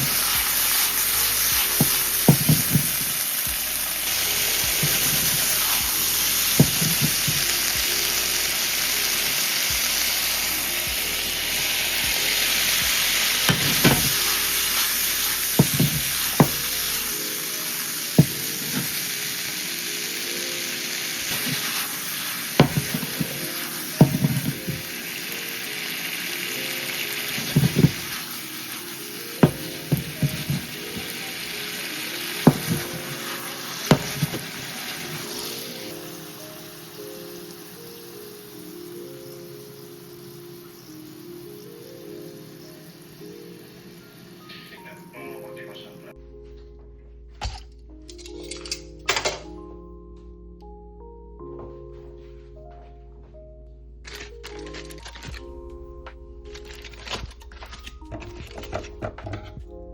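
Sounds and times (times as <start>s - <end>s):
food sizzling in frying pan: 0.0s - 45.4s.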